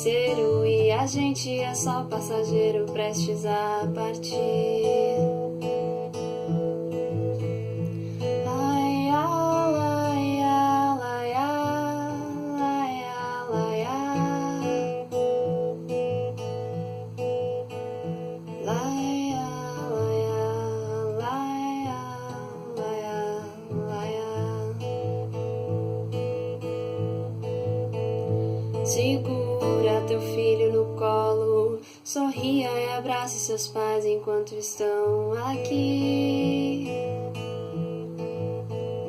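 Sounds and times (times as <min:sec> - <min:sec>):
person singing wordless melody: 0:00.0 - 0:06.2, 0:07.9 - 0:16.0, 0:18.4 - 0:25.4, 0:28.8 - 0:37.6
acoustic guitar strumming chords: 0:00.0 - 0:39.0.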